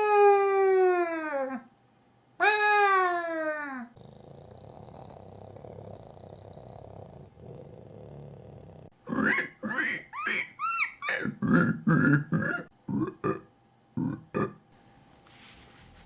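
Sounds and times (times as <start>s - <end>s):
man imitating cat purr: 4.0s - 9.8s, 11.2s - 14.6s
man imitating toad croaks: 9.0s - 14.6s
man imitating pig grunts: 9.1s - 10.4s, 11.1s - 14.6s.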